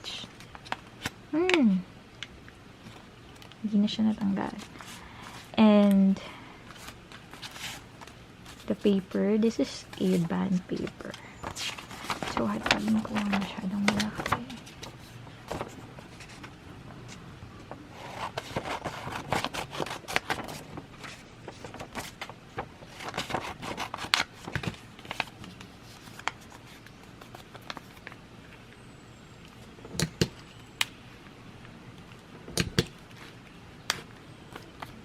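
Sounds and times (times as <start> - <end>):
paper rustling and crackling: 6.7 - 28.2.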